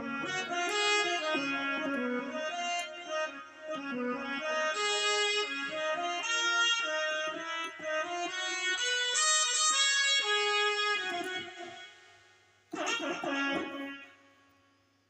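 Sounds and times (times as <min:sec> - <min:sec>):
plucked synthesizer note: 0:00.0 - 0:04.6
reedy synthesizer melody: 0:00.0 - 0:11.8.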